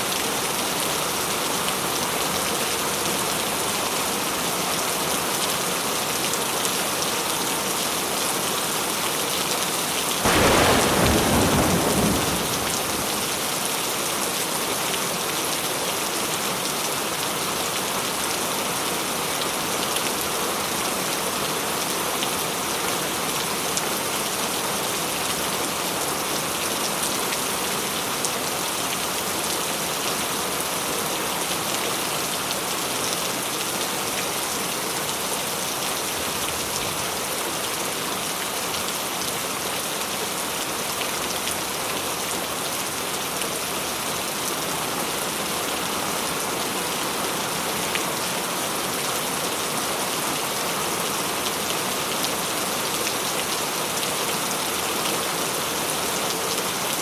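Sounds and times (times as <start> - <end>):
steady rain falling: 8.8 - 14.0, 30.2 - 57.0.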